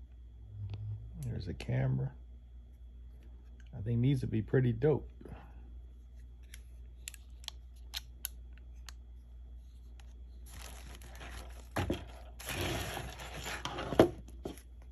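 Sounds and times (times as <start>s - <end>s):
packaging crinkling and rustling: 10.0s - 14.6s.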